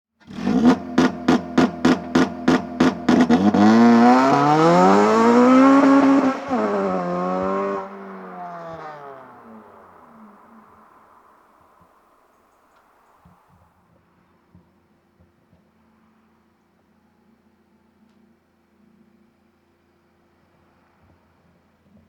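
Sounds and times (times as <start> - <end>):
engine cracking and popping: 0.2 - 6.2
car engine accelerating: 0.2 - 11.8.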